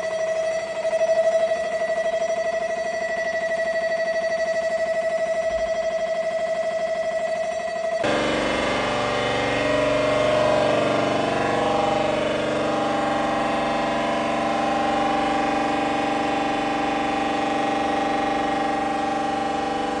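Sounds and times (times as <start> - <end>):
mri scanner buzzing hum: 8.0 - 20.0.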